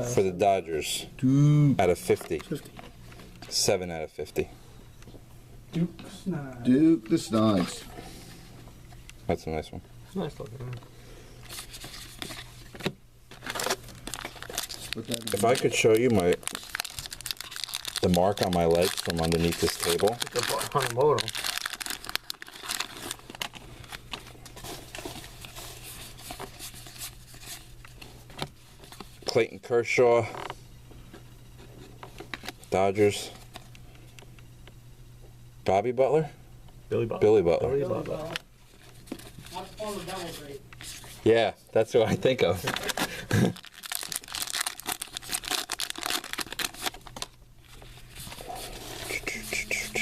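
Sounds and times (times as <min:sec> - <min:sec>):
cards and wrappers rustling: 0:11.4 - 0:29.4, 0:38.0 - 0:41.3, 0:42.4 - 0:50.0
low hum: 0:48.3 - 0:50.0.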